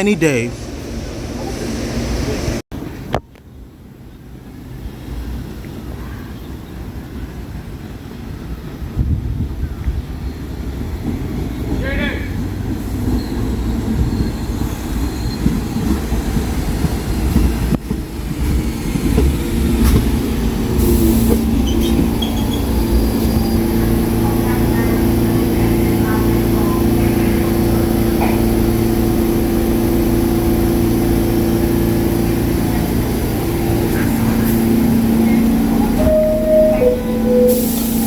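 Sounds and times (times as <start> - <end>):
subway train rumbling on rails: 0.0 - 38.0
high squeals: 20.8 - 25.9.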